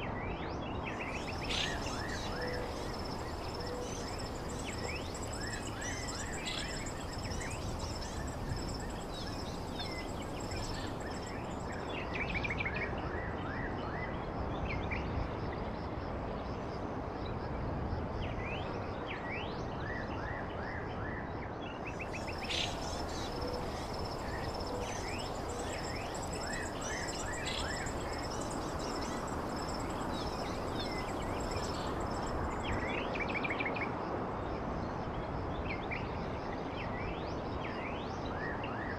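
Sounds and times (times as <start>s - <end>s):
birds chirping and trilling: 1.0s - 11.8s, 22.1s - 32.9s
high-pitched insect drone: 1.1s - 11.8s, 22.1s - 32.9s
steady background rush: 22.1s - 32.7s.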